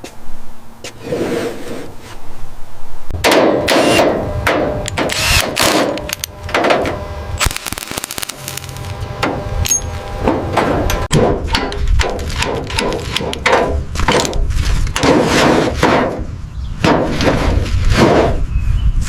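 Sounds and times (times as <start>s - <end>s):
power tool bursts: 3.7s - 4.1s, 5.0s - 10.0s
sharp knocks and clicks: 9.2s - 16.2s.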